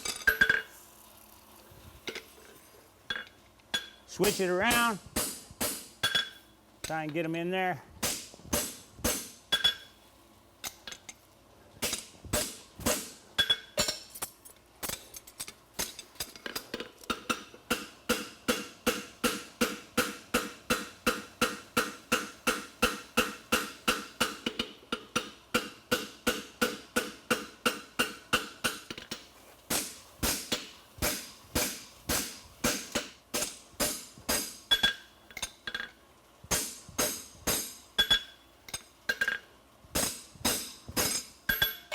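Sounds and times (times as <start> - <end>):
hammer striking on anvil: 8.0 - 9.9, 17.1 - 35.9, 36.5 - 41.9.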